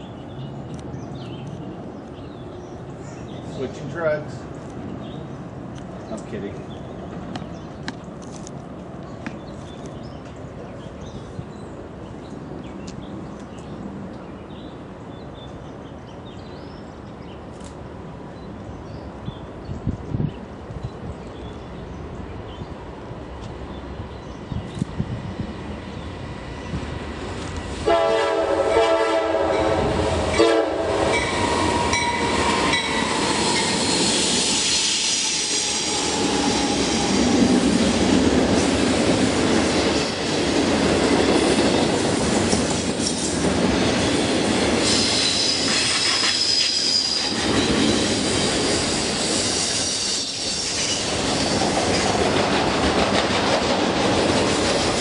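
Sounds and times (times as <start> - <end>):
train air horn blasting: 27.8 - 33.8
train wheels clattering: 31.1 - 55.0
high wheel squeal: 31.2 - 37.5, 44.1 - 51.8.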